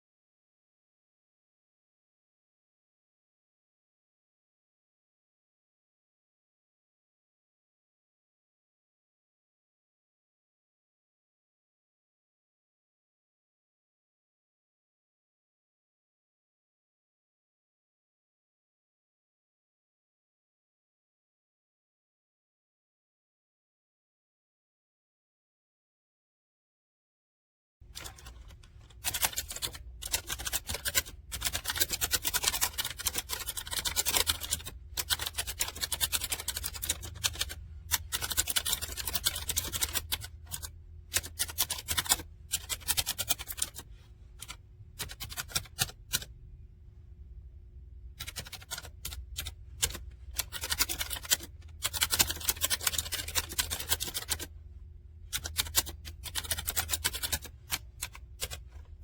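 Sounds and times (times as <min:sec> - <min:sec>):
mechanical keyboard typing: 0:27.9 - 0:46.3, 0:48.2 - 0:54.5, 0:55.2 - 0:58.9
low steady hum: 0:27.9 - 0:59.0.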